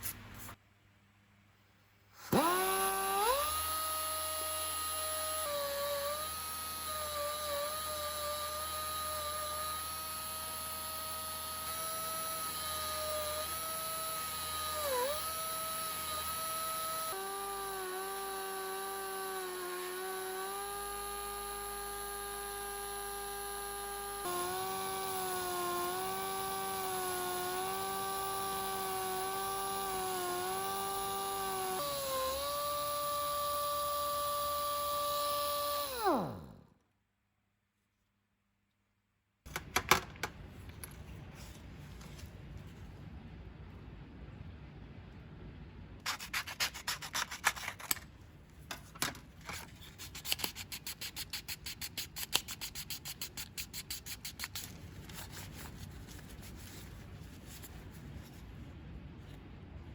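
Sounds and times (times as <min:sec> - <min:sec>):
electric power tool whining: 0:02.2 - 0:36.7.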